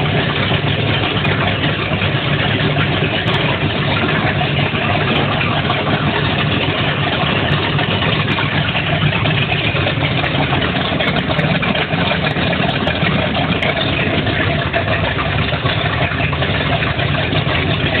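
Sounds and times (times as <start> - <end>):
boat engines running: 0.0 - 18.0.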